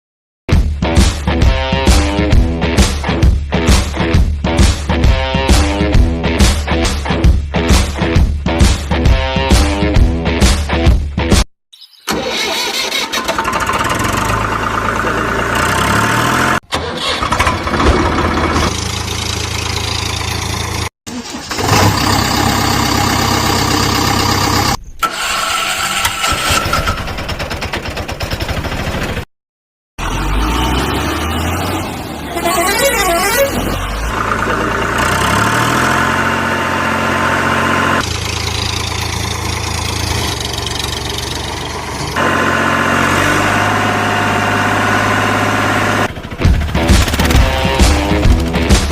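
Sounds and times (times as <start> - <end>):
heavy vehicle engines running: 13.0 - 24.8, 30.0 - 48.9
vehicle horns blaring: 32.2 - 35.8.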